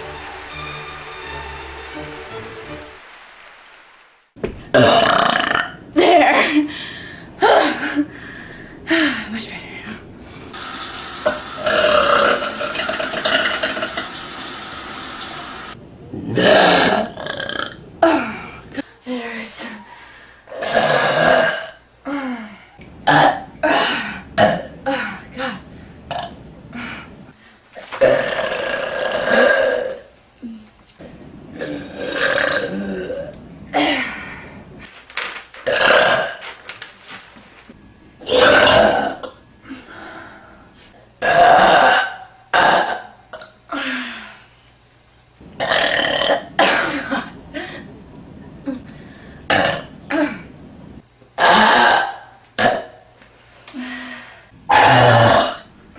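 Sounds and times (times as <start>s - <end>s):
steady hiss: 0.0s - 4.4s, 10.4s - 15.8s
woman belching: 4.7s - 6.2s, 11.3s - 14.0s, 16.2s - 18.3s, 20.5s - 21.8s, 23.0s - 25.0s, 28.0s - 30.1s, 31.6s - 33.4s, 38.2s - 39.4s, 41.2s - 43.6s, 45.6s - 47.3s, 49.5s - 50.4s, 51.4s - 53.0s, 54.7s - 55.7s
woman burping: 4.7s - 6.4s, 20.5s - 21.8s, 23.0s - 25.5s, 28.0s - 30.1s, 38.2s - 39.4s, 41.2s - 43.8s, 45.6s - 47.3s, 49.5s - 50.5s, 51.4s - 53.0s, 54.7s - 55.7s.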